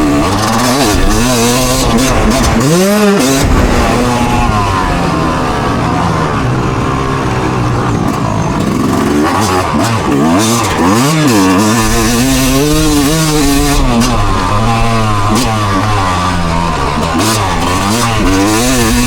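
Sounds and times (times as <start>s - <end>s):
engine revving: 0.0s - 19.0s.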